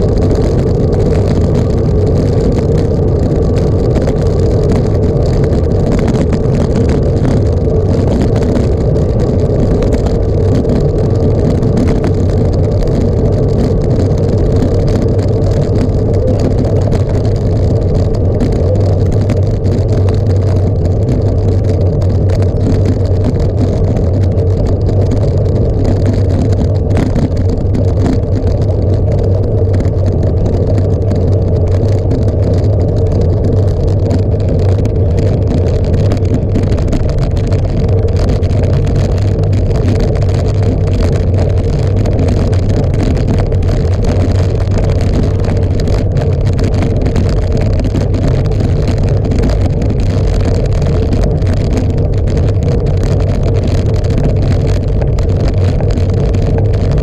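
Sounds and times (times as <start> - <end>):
wind rumble on microphone: 0.0 - 57.0.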